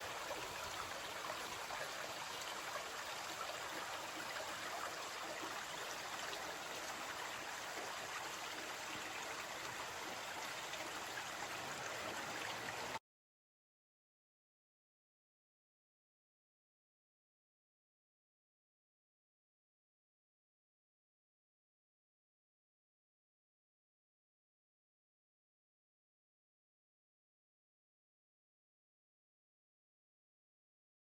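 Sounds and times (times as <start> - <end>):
stream rushing: 0.0 - 13.0.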